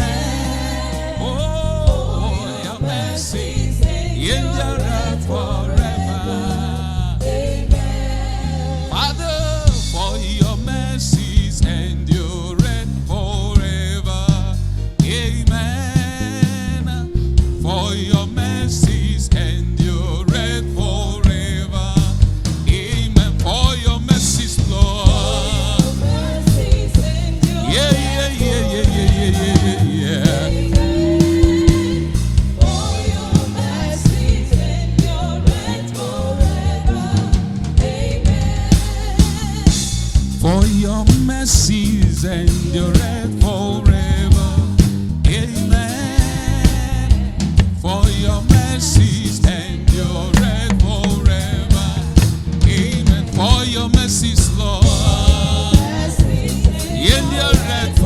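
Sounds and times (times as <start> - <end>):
drum beats: 0.0 - 58.0
steady bass line: 0.0 - 58.0
person singing wordless runs: 47.6 - 58.0.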